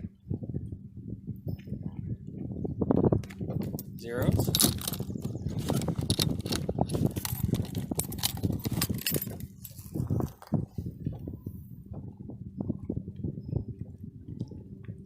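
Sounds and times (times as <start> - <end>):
clattering and jingling: 4.3 - 10.5.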